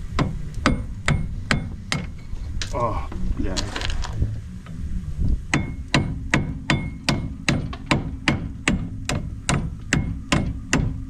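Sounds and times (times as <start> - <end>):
hammer striking metal: 0.2 - 2.2, 5.5 - 11.0.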